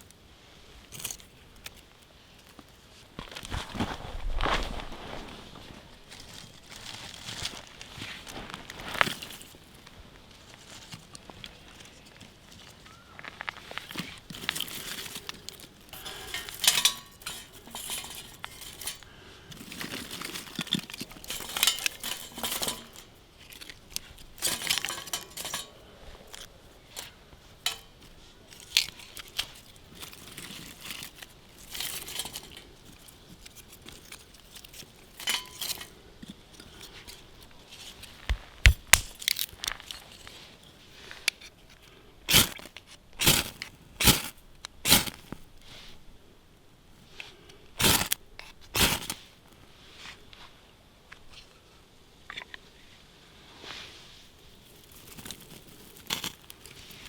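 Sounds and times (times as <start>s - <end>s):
gear crinkling and scraping: 0.9s - 46.0s, 47.0s - 50.5s, 53.5s - 57.0s.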